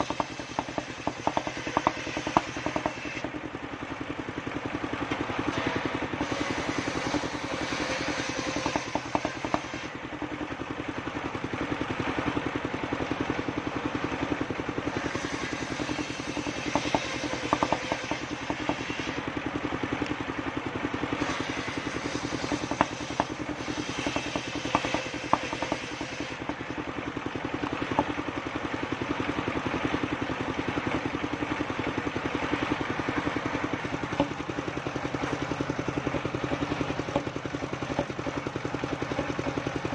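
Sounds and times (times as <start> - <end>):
timber knocking and clattering: 0.0 - 3.2, 8.1 - 9.8, 15.9 - 18.9, 24.0 - 26.6, 36.5 - 38.4
saw blade cutting wood: 0.0 - 3.4, 5.4 - 10.0, 14.8 - 19.3, 21.2 - 26.7, 34.0 - 34.4, 36.5 - 38.4
sawmill engine running: 0.0 - 39.9.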